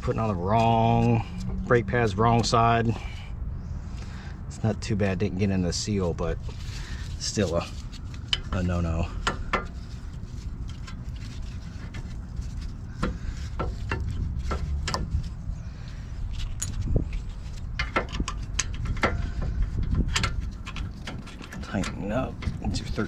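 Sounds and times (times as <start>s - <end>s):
steady low rumble: 0.0s - 23.0s.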